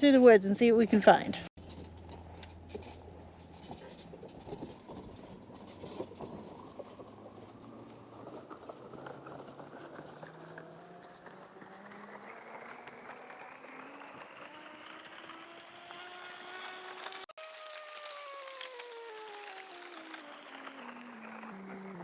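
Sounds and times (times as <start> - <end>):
footsteps crunching in woodland: 10.3 - 22.0.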